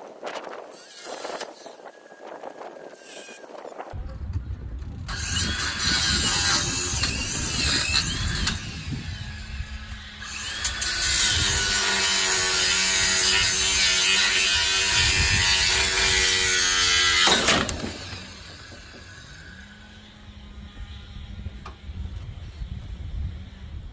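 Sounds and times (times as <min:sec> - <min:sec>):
power tool working on metal: 0:05.1 - 0:22.1.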